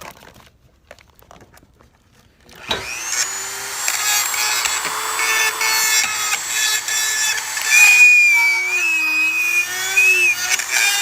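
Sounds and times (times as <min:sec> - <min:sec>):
rotary tool whining: 0:02.5 - 0:11.0
grinding hiss cutting metal: 0:02.6 - 0:11.0.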